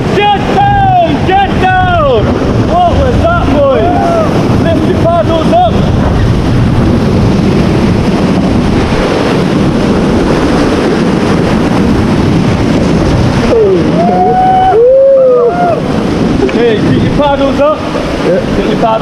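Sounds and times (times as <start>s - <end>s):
whitewater rushing and splashing: 0.0s - 19.0s
wind buffeting microphone: 0.0s - 19.0s
people whooping and shouting: 3.7s - 4.4s, 13.5s - 15.9s.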